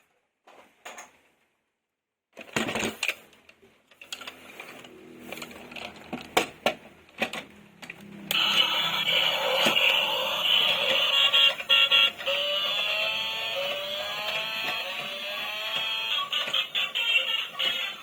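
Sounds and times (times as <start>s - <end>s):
plastic toys clicking and rattling: 2.4s - 12.8s, 14.2s - 18.0s.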